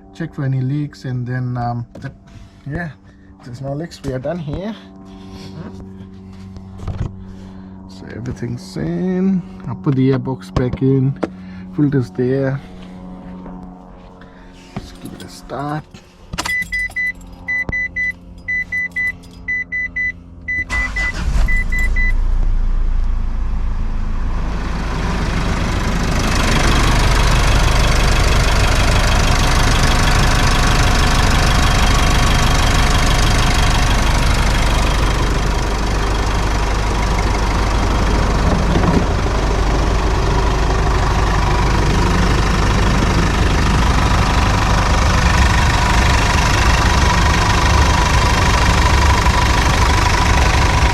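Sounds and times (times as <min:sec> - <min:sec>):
car engine starting and idling: 0:16.4 - 0:50.9
car warning chime beeping: 0:16.5 - 0:22.2.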